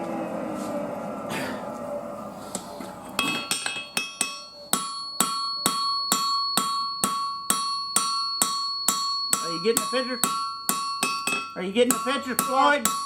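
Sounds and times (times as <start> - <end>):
hammer striking steel on anvil: 3.2 - 13.0.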